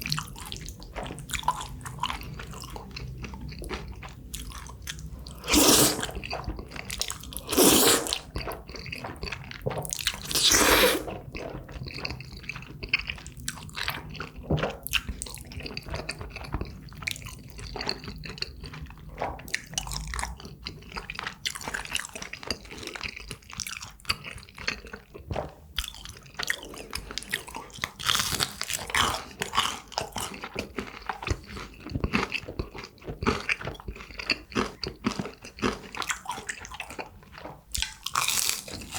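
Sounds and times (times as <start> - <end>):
chewing with crunches: 0.0 - 38.9
wet sticky mouth sounds: 4.3 - 12.2.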